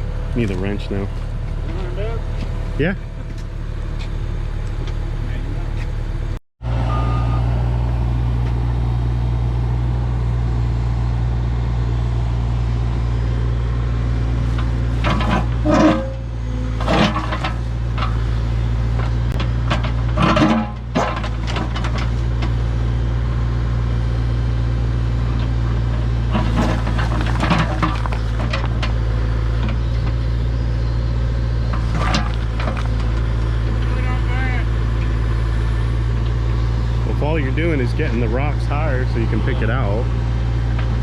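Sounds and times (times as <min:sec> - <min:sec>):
heavy diesel engine running: 0:00.0 - 0:41.0
metal clanking and scraping: 0:14.4 - 0:18.4, 0:19.0 - 0:22.5, 0:26.3 - 0:29.0, 0:31.7 - 0:33.9.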